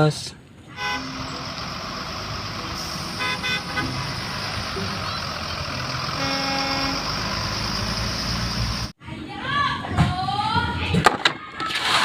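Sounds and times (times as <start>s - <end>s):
toy electronic horn tooting: 0.8s - 1.3s, 3.2s - 3.9s, 6.2s - 7.1s.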